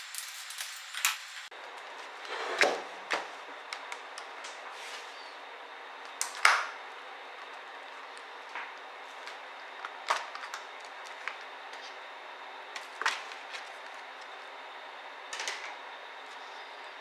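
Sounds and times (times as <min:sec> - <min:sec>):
loud clatters: 0:00.0 - 0:01.5
steady hiss: 0:00.0 - 0:01.5.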